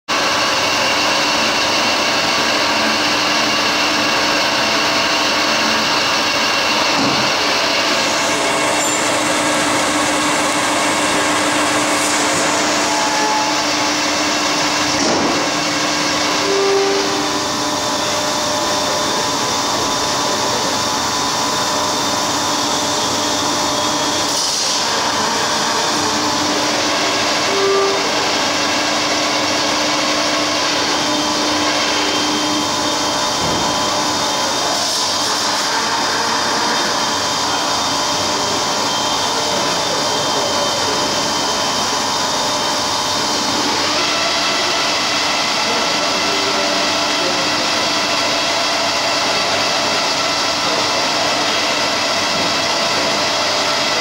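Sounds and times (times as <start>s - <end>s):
loud machine noise: 0.1s - 54.0s
short tones: 16.2s - 17.9s, 27.4s - 28.5s.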